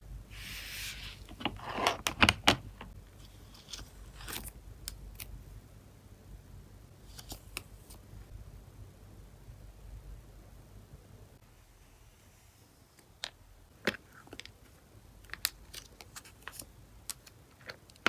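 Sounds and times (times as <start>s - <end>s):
plastic packaging rustling: 0.8s - 2.9s.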